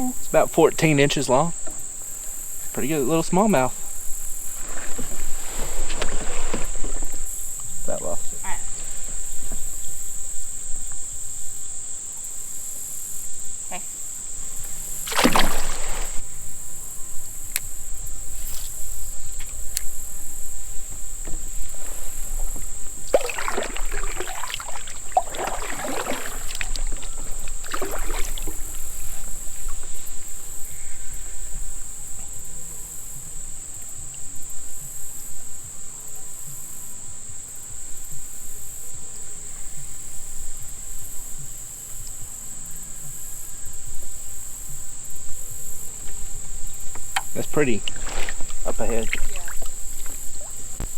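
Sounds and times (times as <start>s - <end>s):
water splashes and knocks: 0.0s - 11.2s, 14.4s - 30.4s, 45.2s - 50.9s
insects droning: 0.0s - 50.9s.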